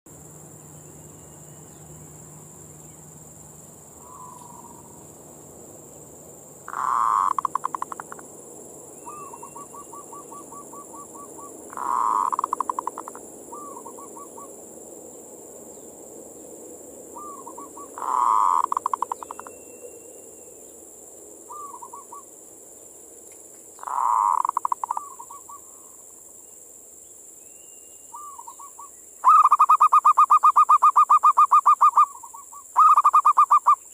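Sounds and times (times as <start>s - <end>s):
high-pitched hiss: 0.1s - 33.9s
dove cooing song: 4.0s - 4.9s, 9.0s - 14.6s, 17.1s - 19.5s, 21.5s - 22.3s, 23.8s - 26.0s, 28.1s - 33.8s.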